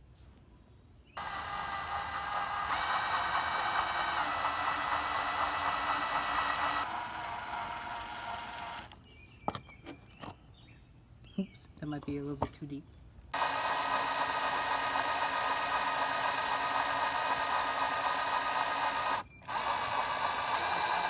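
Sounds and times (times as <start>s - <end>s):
electric drill boring into metal: 1.2s - 9.0s, 13.4s - 21.0s.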